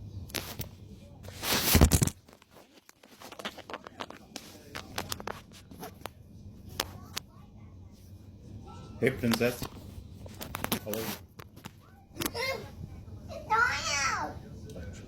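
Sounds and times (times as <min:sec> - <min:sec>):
small clicks and scrapes: 0:00.3 - 0:07.3, 0:09.3 - 0:12.4
loud rustling scrape: 0:01.3 - 0:03.6.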